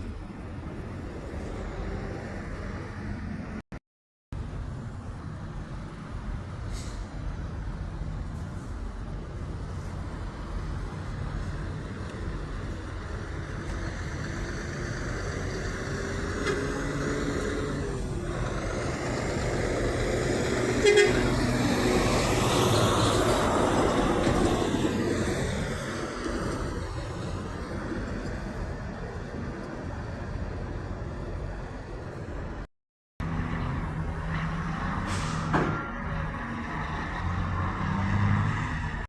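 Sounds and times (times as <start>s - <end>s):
truck engine and road noise: 0.0s - 39.0s
truck air horn: 16.3s - 17.3s, 20.5s - 21.7s.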